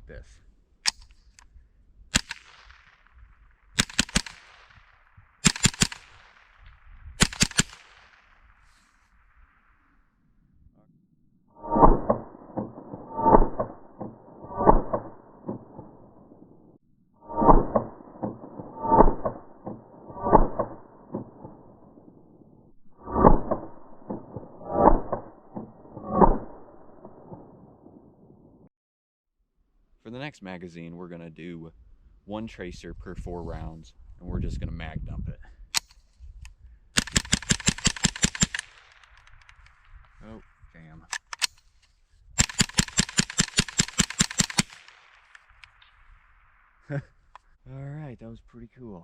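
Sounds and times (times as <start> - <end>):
rifle shots in bursts: 2.1 - 9.0, 37.0 - 40.4, 42.4 - 46.9
gunshot echo: 2.1 - 9.8, 42.4 - 47.3.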